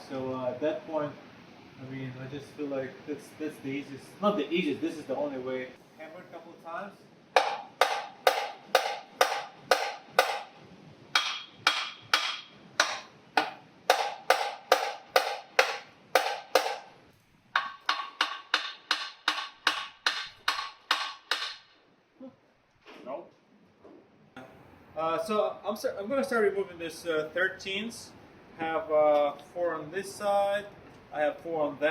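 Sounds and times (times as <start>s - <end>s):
hammer blows on metal engine: 7.4s - 16.9s.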